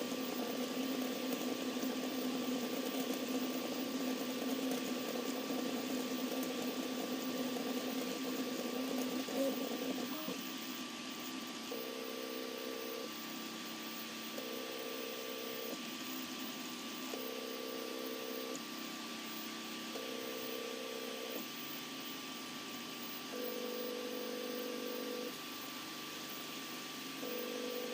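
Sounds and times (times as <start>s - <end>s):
printer motors humming and hissing: 0.0s - 27.9s.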